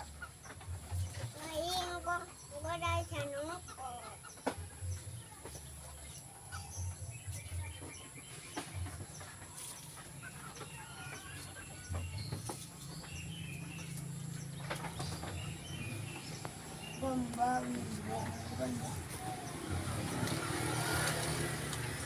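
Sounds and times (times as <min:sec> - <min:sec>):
fowl and small birds chirping: 0:00.0 - 0:22.0.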